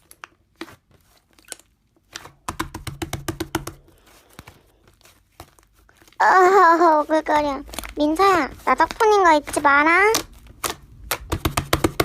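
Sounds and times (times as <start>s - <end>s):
slime clicking and popping: 8.9s - 12.0s.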